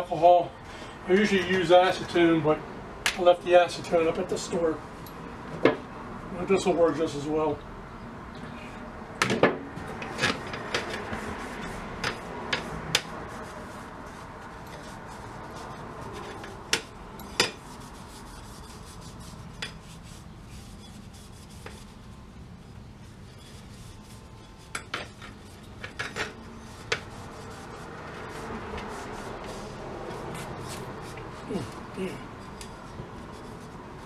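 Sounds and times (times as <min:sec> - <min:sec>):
rag rubbing metal part: 0:10.0 - 0:22.2, 0:23.0 - 0:34.0.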